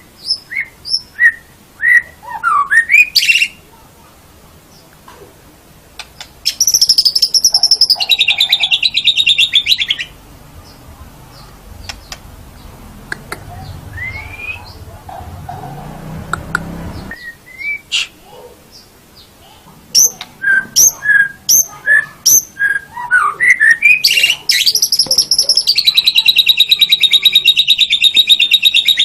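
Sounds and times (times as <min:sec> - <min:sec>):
bird trilling: 0:00.2 - 0:03.6, 0:06.0 - 0:18.2, 0:19.9 - 0:29.0
soft bird clicks: 0:06.0 - 0:06.4, 0:11.8 - 0:12.3
short rising whistles: 0:13.9 - 0:14.7.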